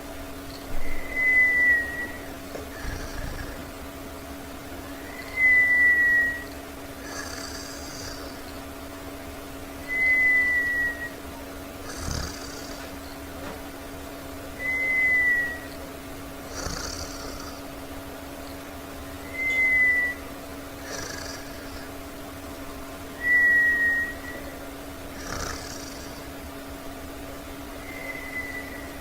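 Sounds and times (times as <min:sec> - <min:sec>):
whistling tone: 0:00.8 - 0:02.3, 0:05.0 - 0:06.5, 0:09.8 - 0:11.2, 0:14.6 - 0:15.8, 0:19.2 - 0:20.3, 0:23.2 - 0:24.6, 0:27.8 - 0:29.0
breathy snoring: 0:02.6 - 0:03.8, 0:06.2 - 0:08.6, 0:11.8 - 0:13.1, 0:16.4 - 0:17.8, 0:20.8 - 0:22.1, 0:25.1 - 0:26.3.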